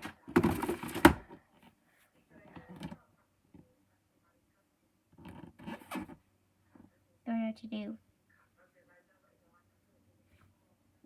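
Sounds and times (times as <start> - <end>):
rustling scrape: 5.5 - 6.2.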